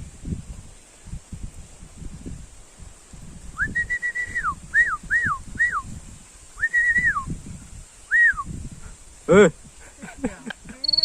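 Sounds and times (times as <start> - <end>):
whistled notes: 3.6 - 5.9, 6.6 - 7.3, 8.1 - 8.5.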